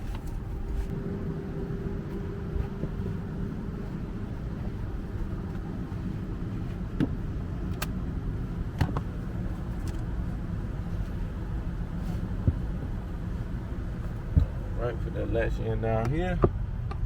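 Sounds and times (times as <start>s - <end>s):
low rumbling background noise: 0.0s - 17.0s.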